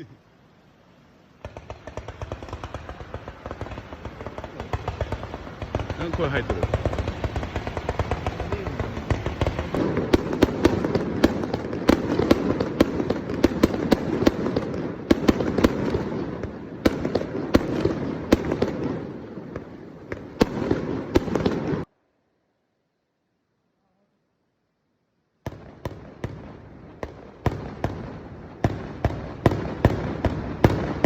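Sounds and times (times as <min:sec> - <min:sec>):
continuous rumble: 0:00.0 - 0:20.4
fireworks bangs and crackling: 0:01.4 - 0:21.9, 0:25.4 - 0:31.0.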